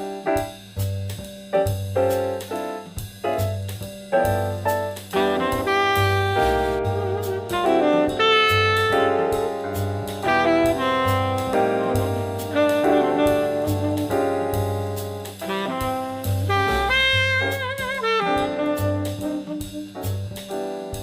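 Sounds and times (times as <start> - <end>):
drum kit: 0.0 - 21.0
piano: 0.0 - 21.0
walking bass: 0.4 - 21.0
saxophone melody: 5.2 - 14.7, 15.4 - 20.2.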